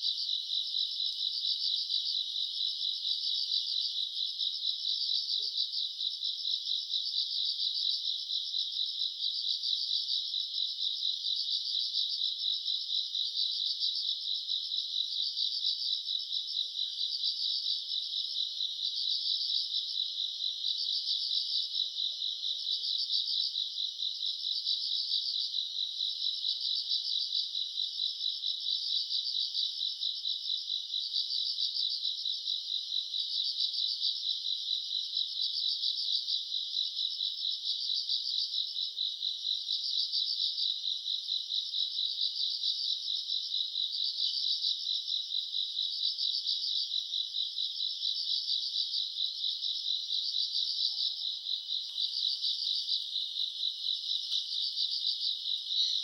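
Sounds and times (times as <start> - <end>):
crickets trilling: 47.8 - 56.0.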